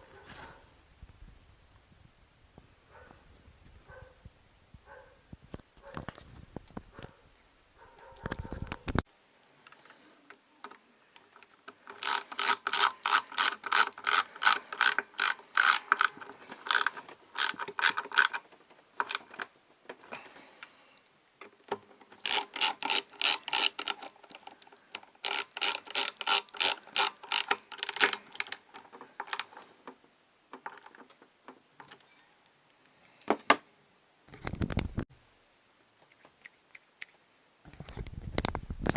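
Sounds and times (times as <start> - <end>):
rapid mechanical clicking: 11.7 - 18.4, 22.1 - 29.6.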